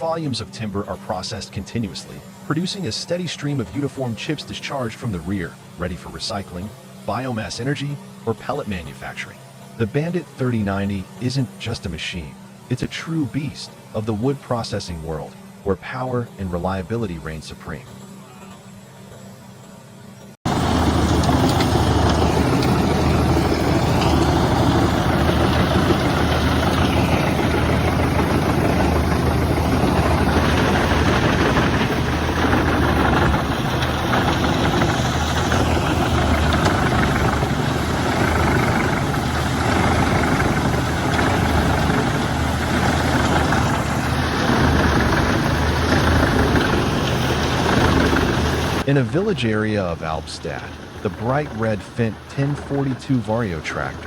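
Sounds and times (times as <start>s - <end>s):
wood chipper with diesel engine: 0.0s - 15.6s, 20.5s - 54.0s.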